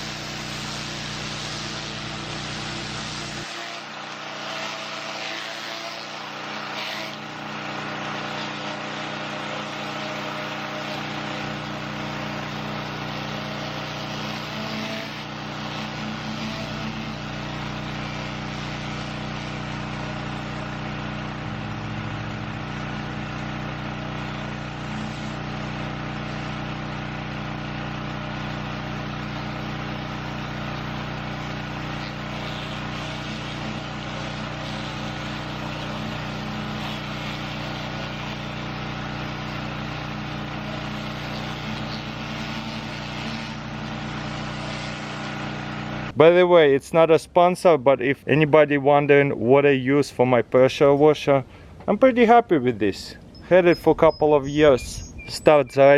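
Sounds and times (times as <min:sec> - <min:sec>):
pressure washer engine running: 0:00.0 - 0:46.2, 0:51.5 - 0:55.9.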